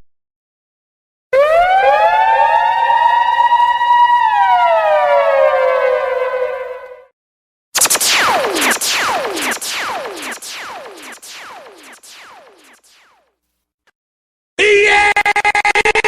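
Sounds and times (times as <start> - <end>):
echoing siren: 1.3 - 7.1, 7.8 - 13.3.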